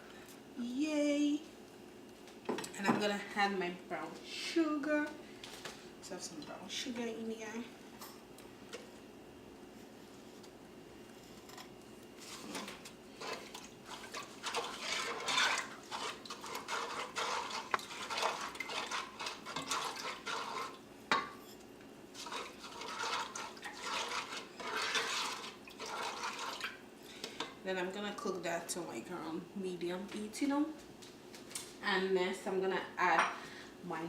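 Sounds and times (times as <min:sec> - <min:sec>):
spoon scraping a saucepan: 0:12.3 - 0:21.6, 0:22.2 - 0:26.7.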